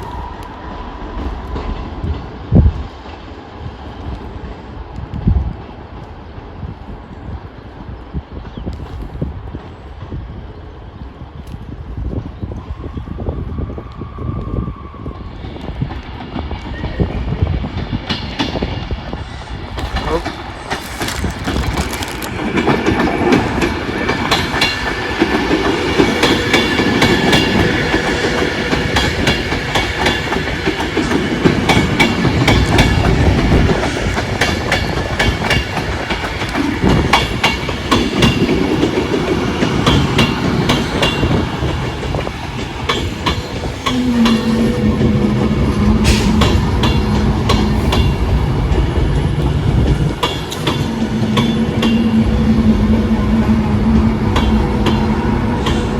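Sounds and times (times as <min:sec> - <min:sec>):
train wheels clattering over rails: 0:15.6 - 0:55.9.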